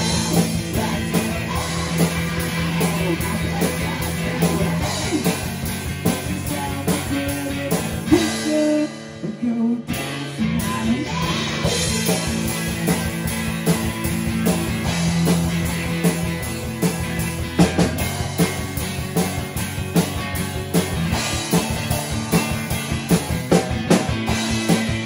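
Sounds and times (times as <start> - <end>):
drum kit beat: 0.0 - 25.0
electric guitar: 0.0 - 25.0.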